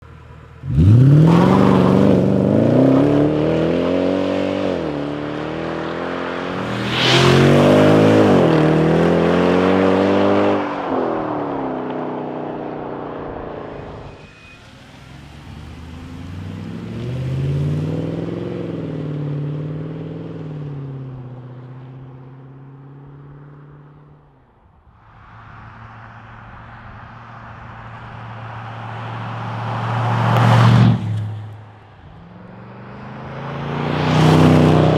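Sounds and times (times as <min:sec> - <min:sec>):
car engine accelerating hard: 0:00.6 - 0:14.1, 0:32.3 - 0:34.9.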